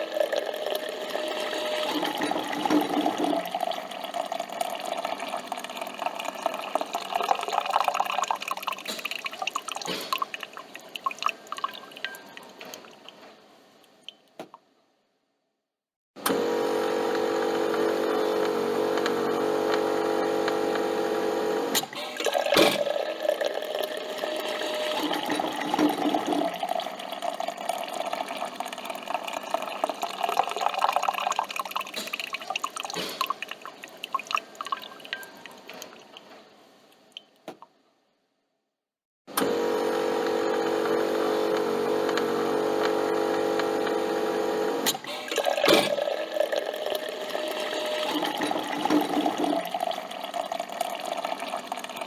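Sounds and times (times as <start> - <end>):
coffee machine humming: 0.0 - 8.3, 16.2 - 31.4, 39.3 - 52.0
liquid dripping into cup: 0.1 - 13.2, 22.1 - 36.3.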